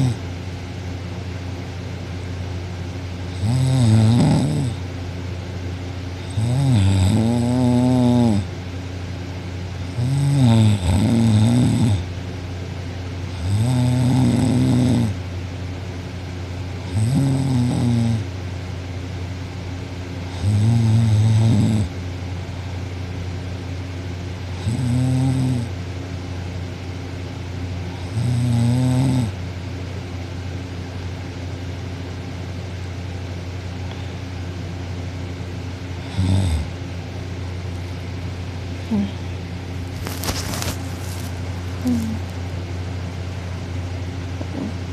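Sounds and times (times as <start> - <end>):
woman snoring: 0.0 - 0.2, 3.3 - 4.8, 6.2 - 8.5, 9.9 - 12.1, 13.3 - 15.2, 16.9 - 18.2, 20.3 - 21.9, 24.6 - 25.7, 28.0 - 29.4, 36.0 - 36.8, 38.8 - 39.3, 41.8 - 42.3, 44.5 - 44.8.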